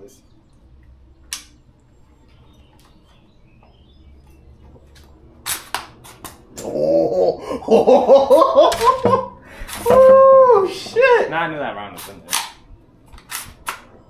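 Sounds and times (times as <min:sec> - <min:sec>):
wordless voice: 0:00.0 - 0:00.3
pistol sharp clicks: 0:12.0 - 0:13.9.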